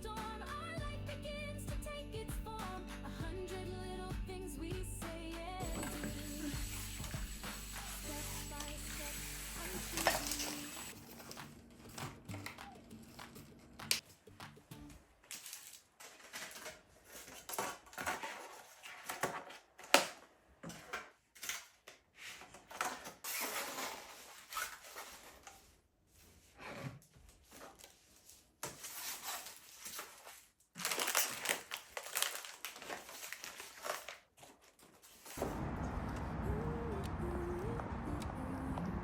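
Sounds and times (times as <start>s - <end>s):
crinkling rustles: 15.2s - 35.8s.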